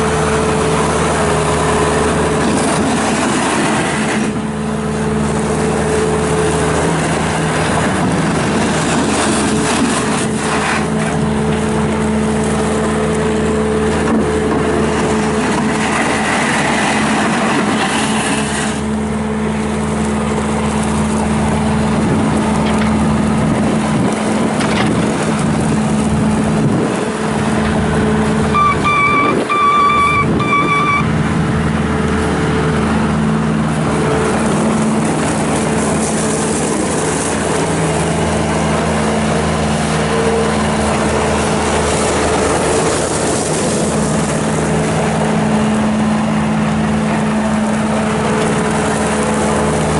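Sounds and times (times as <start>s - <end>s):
diesel engine running: 0.0s - 49.9s
pulsing electronic beep: 28.5s - 31.1s.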